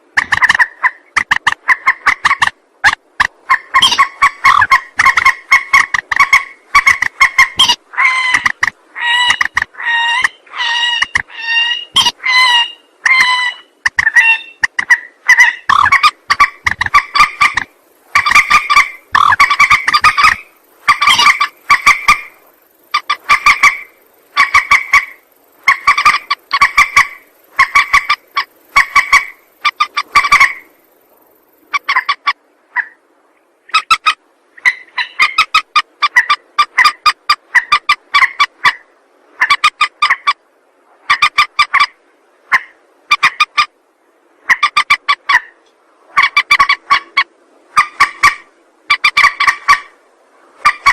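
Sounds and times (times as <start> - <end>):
harsh bird calls: 0.2 - 30.8.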